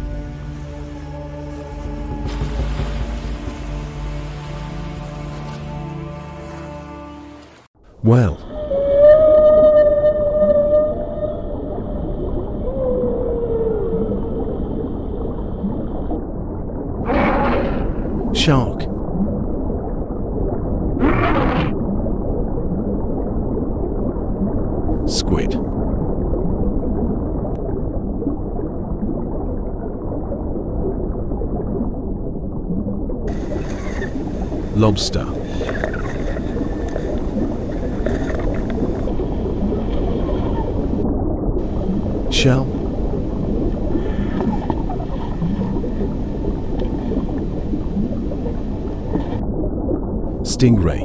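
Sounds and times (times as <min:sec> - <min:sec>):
muffled underwater rumble and hiss: 0:00.0 - 0:07.2, 0:33.3 - 0:41.0, 0:41.6 - 0:49.4
underwater rumbling and gurgling: 0:00.0 - 0:07.4, 0:08.5 - 0:50.5.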